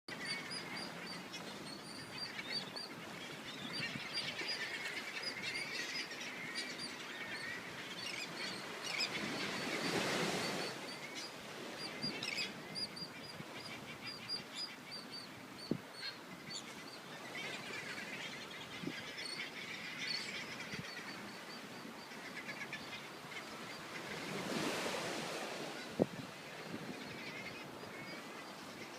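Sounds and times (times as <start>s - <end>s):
flock of birds calling: 0.1s - 15.1s.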